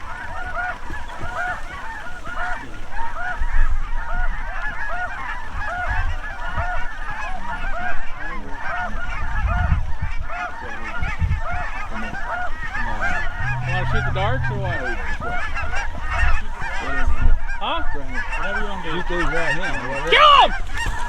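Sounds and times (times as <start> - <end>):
geese honking: 0.0 - 21.0
low bumps and rumbles: 13.2 - 15.8.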